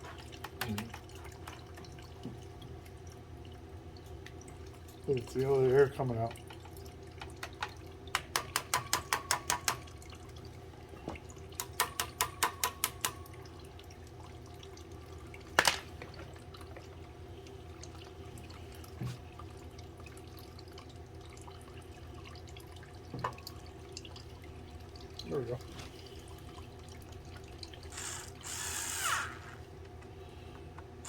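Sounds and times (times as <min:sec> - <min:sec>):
oil burner humming: 0:00.0 - 0:31.0
bleed port spitting air spurts: 0:27.9 - 0:29.7.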